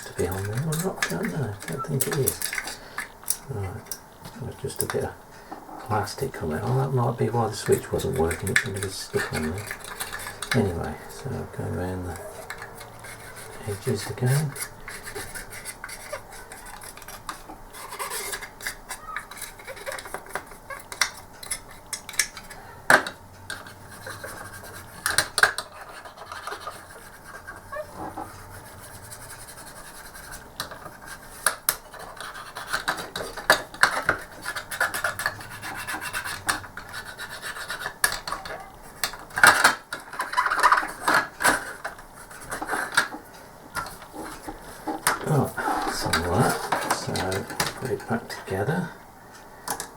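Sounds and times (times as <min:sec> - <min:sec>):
cotton bud scrubbing plastic: 0:00.0 - 0:02.8, 0:05.9 - 0:21.0.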